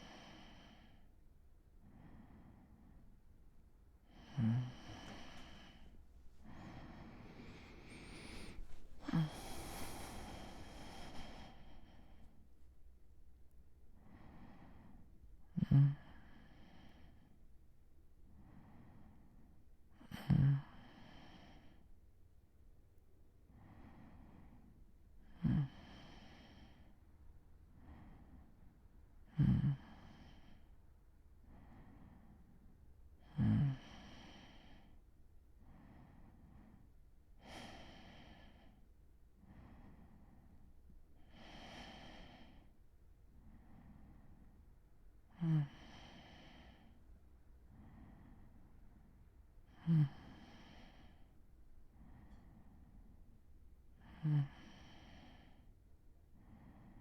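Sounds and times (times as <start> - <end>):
man breathing in sleep: 0.0 - 1.2, 4.0 - 12.7, 14.0 - 17.4, 20.1 - 21.9, 23.5 - 24.7, 25.4 - 27.0, 29.4 - 30.7, 33.2 - 38.8, 39.4 - 42.8, 43.4 - 44.6, 45.3 - 47.1, 49.7 - 53.2, 54.0 - 55.7, 56.4 - 57.0
low snore: 4.2 - 12.2, 20.1 - 21.0.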